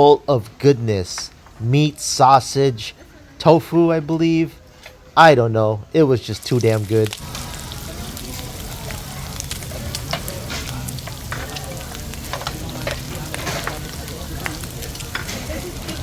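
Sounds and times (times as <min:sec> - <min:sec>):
meat sizzling on grill: 0:06.2 - 0:16.0.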